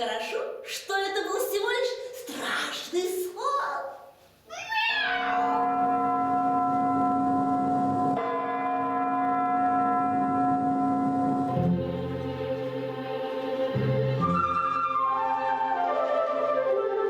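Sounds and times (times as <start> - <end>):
soft low sustained music: 5.7 - 15.4.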